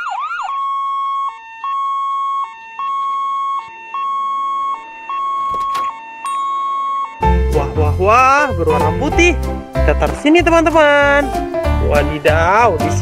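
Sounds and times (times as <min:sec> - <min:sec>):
ambulance siren: 0:00.0 - 0:08.6.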